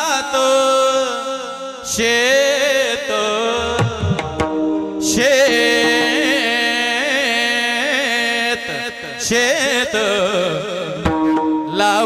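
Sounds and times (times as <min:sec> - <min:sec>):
man singing long notes: 0:00.0 - 0:12.0
drum strokes: 0:03.6 - 0:05.2.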